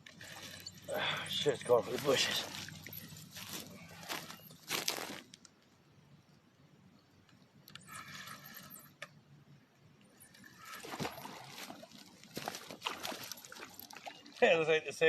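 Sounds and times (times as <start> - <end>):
water splashing: 0.0 - 4.2, 10.4 - 15.0.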